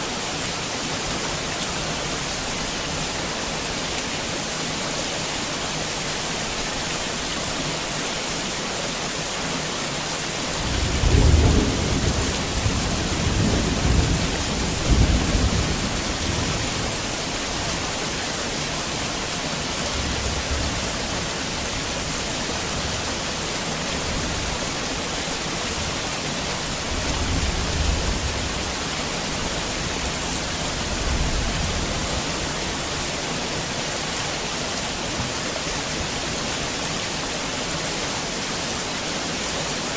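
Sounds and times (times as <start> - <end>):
heavy rain falling: 0.0 - 39.9
thunder rumbling: 10.6 - 17.1.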